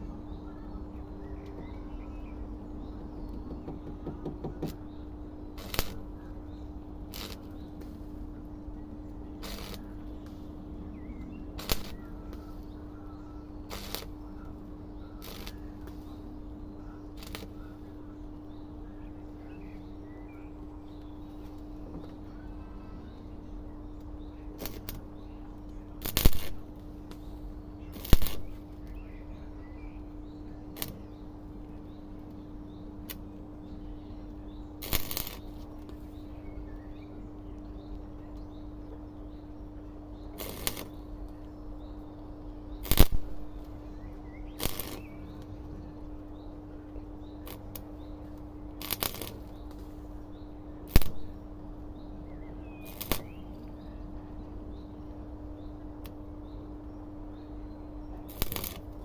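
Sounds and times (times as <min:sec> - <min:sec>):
steady low hum: 0:00.0 - 0:59.0
welder crackling bursts: 0:05.5 - 0:06.2, 0:07.0 - 0:08.0, 0:09.3 - 0:10.4, 0:11.0 - 0:12.9, 0:13.6 - 0:16.1, 0:17.1 - 0:17.6, 0:24.5 - 0:29.0, 0:30.7 - 0:31.2, 0:34.7 - 0:36.2, 0:40.3 - 0:41.6, 0:42.7 - 0:43.8, 0:44.4 - 0:45.8, 0:47.3 - 0:50.0, 0:50.7 - 0:51.4, 0:52.6 - 0:53.8, 0:58.2 - 0:59.0.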